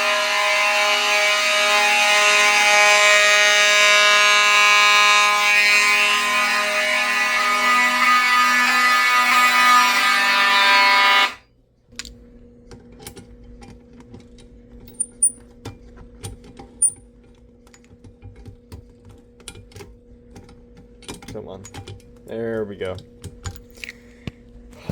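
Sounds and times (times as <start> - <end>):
fire alarm horns: 0.0 - 11.4
faint steady hum: 11.4 - 24.9.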